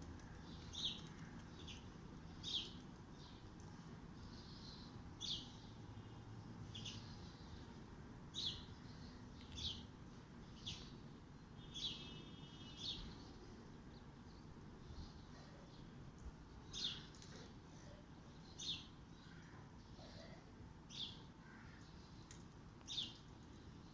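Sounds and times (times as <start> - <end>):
bird chirping: 0.4 - 3.4, 4.2 - 7.7, 8.3 - 11.0, 11.6 - 13.5, 16.7 - 17.2.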